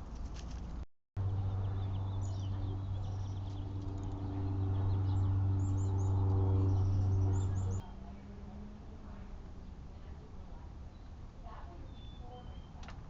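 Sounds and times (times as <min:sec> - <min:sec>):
low mechanical hum: 0:00.0 - 0:13.0
small birds chirping: 0:00.4 - 0:08.2, 0:10.8 - 0:13.0.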